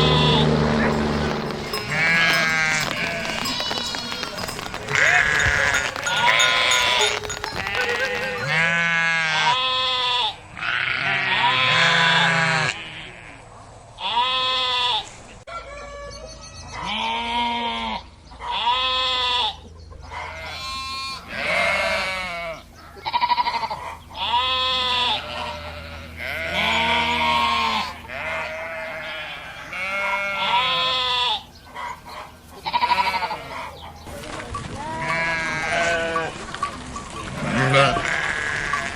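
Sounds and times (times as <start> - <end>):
sheep bleating: 0.0 - 13.4, 20.2 - 31.5, 32.6 - 33.8, 34.8 - 36.4, 37.2 - 38.9.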